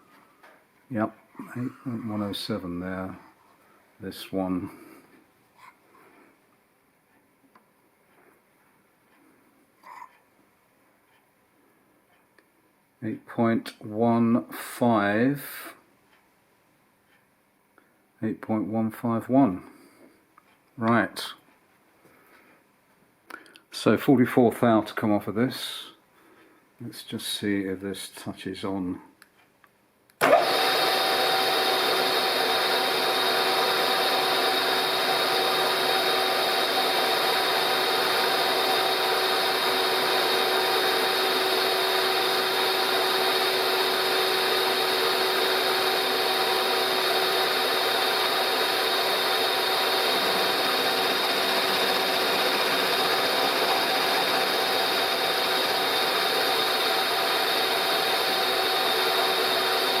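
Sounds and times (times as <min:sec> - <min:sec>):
milling machine cutting metal: 0:30.2 - 1:00.0.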